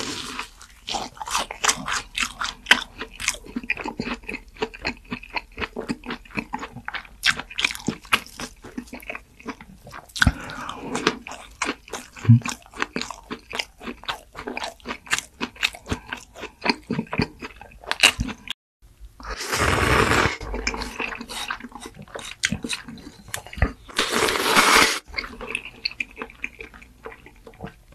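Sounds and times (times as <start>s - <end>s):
crunching crisp food: 0.0s - 18.5s.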